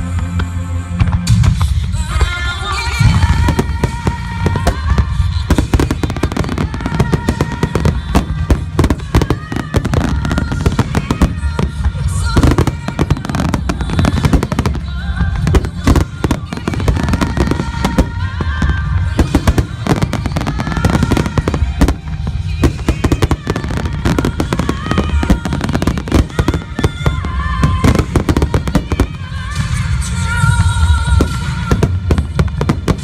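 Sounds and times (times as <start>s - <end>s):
music playing: 0.0s - 33.0s
fireworks shells bursting: 2.8s - 29.9s.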